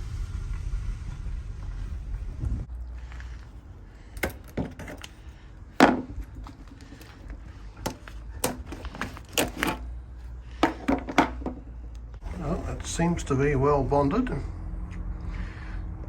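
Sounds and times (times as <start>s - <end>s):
low steady rumble: 0.0s - 4.3s
sharp knocks and clatters: 5.8s - 7.2s, 10.6s - 11.6s.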